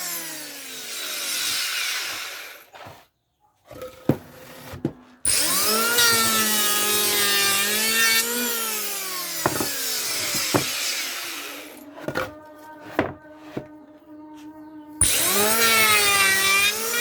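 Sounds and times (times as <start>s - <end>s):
electric wood planer cutting: 0.0s - 2.7s, 5.3s - 11.8s, 15.0s - 17.0s.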